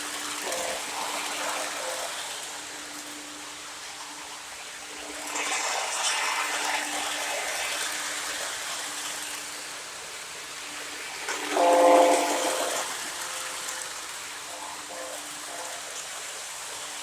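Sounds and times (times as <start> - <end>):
model train wheels rolling on track: 0.0 - 17.0
train horn toot: 0.4 - 2.2, 11.4 - 16.1.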